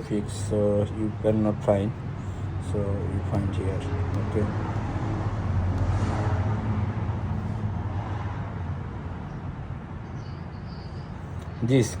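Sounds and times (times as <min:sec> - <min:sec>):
vehicle engine running: 0:00.0 - 0:08.0.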